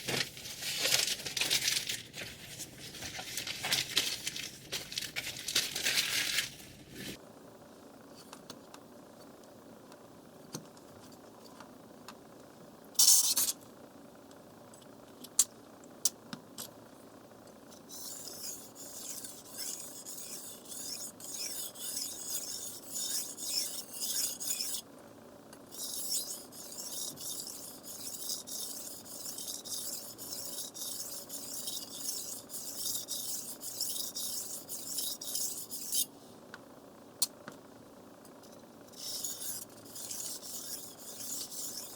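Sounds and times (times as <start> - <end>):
knife rasping on whetstone: 17.9 - 24.8, 25.7 - 36.1, 39.0 - 41.9.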